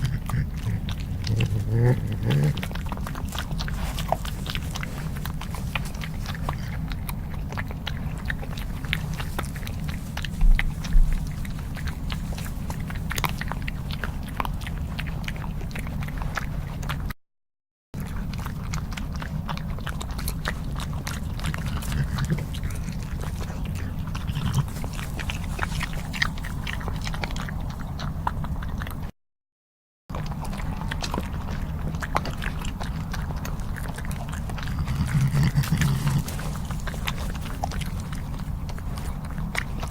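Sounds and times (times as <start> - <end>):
low growl: 0.0 - 5.4, 21.5 - 28.7, 34.3 - 39.2
badger crunching and chewing: 0.0 - 17.1, 18.0 - 29.1, 30.1 - 39.9.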